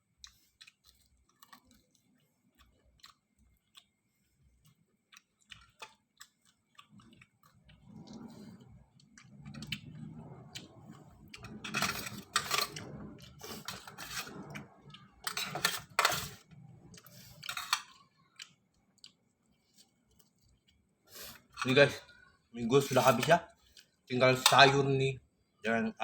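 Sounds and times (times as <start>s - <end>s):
person chewing noodles: 0.0s - 11.6s, 15.8s - 21.6s.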